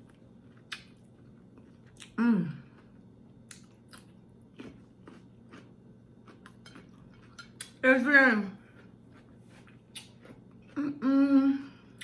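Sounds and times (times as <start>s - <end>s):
person chewing food: 0.0s - 7.8s, 8.6s - 11.0s
person humming mm: 2.2s - 2.7s, 10.8s - 11.9s.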